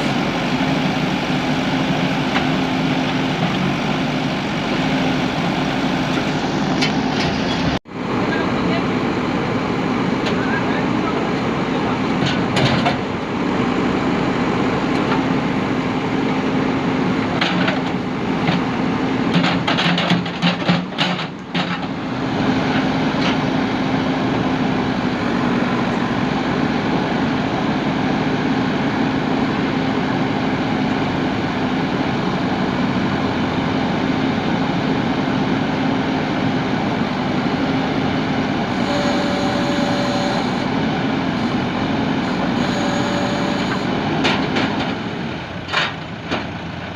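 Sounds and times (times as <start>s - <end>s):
diesel engine running: 0.0s - 46.9s
sharp knocks and clatter: 17.4s - 18.7s, 19.3s - 21.9s, 44.2s - 45.0s
brief high whine: 42.2s - 43.9s.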